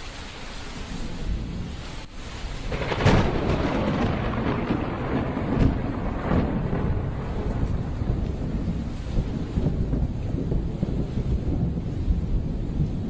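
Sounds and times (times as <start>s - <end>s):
steady rain: 0.0s - 13.0s
thunder rumbling: 0.7s - 13.0s
sharp thunder crack: 2.6s - 13.0s.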